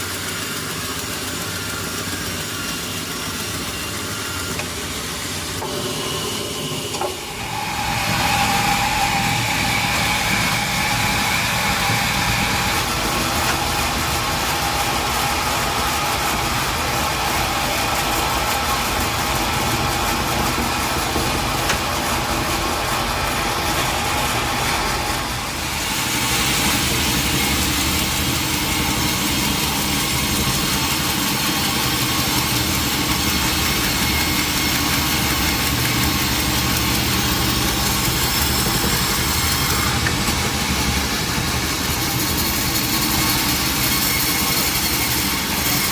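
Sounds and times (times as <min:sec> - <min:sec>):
sawmill machinery running: 0:00.0 - 0:45.9.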